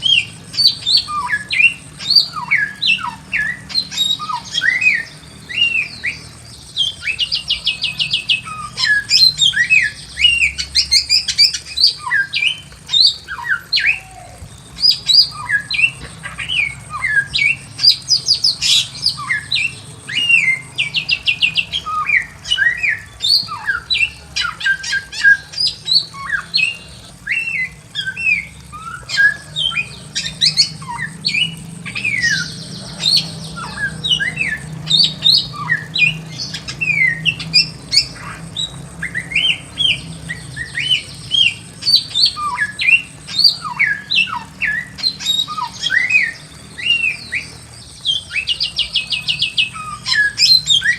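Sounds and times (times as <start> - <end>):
bird whistling song: 0.0 - 50.9.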